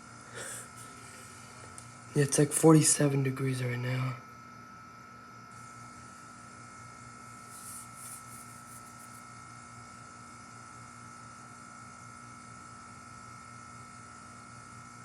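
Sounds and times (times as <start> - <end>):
air conditioner unit humming: 0.0 - 15.0.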